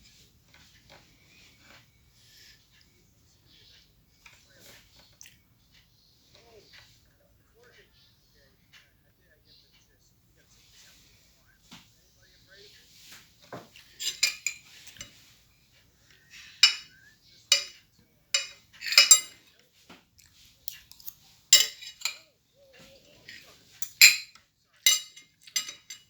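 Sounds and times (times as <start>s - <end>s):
spoon clinking against a dish: 13.8s - 15.3s, 16.3s - 19.5s, 20.7s - 22.3s, 23.3s - 26.0s.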